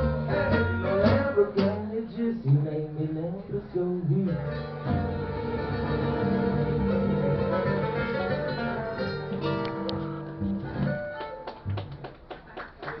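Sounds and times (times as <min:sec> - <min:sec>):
acoustic guitar music: 0:00.0 - 0:12.0
people clapping: 0:10.6 - 0:13.0.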